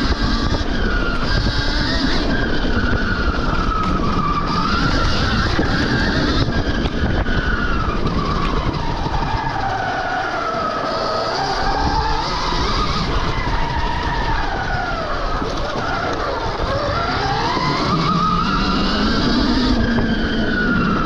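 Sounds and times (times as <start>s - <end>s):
electric motor whining: 0.0s - 21.0s
wind noise: 0.0s - 21.0s.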